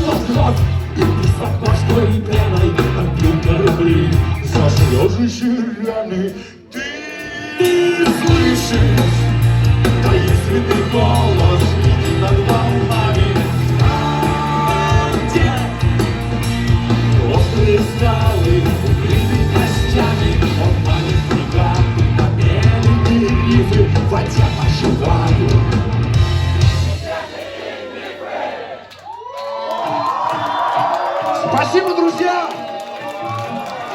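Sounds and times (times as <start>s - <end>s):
live rock band playing: 0.0s - 5.6s, 7.6s - 27.3s.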